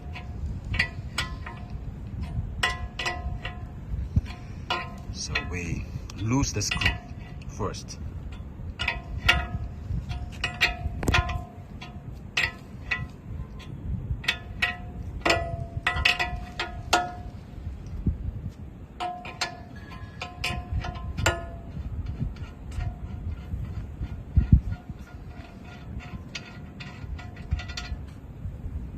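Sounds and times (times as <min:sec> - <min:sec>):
metal tools clinking on steel: 0:00.0 - 0:17.4
steady low rumble: 0:00.0 - 0:28.9.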